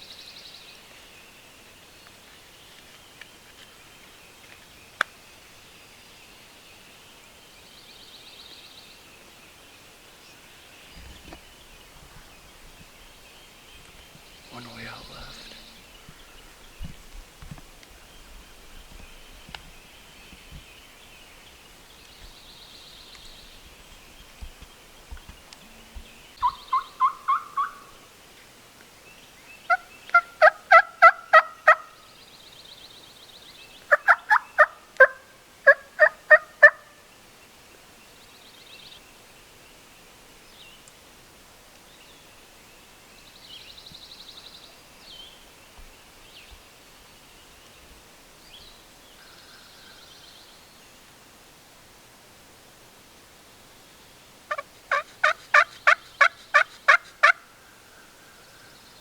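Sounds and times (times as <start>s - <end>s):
faint songbird chirps: 0.0s - 41.1s, 41.7s - 51.2s, 53.3s - 59.0s
turkey yelping: 26.4s - 28.0s, 29.7s - 31.9s, 33.9s - 36.9s, 54.5s - 57.4s.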